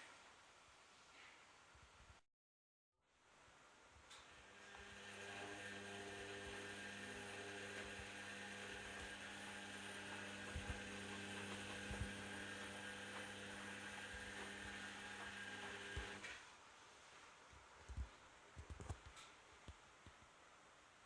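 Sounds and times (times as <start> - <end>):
washing machine humming: 4.5 - 16.4.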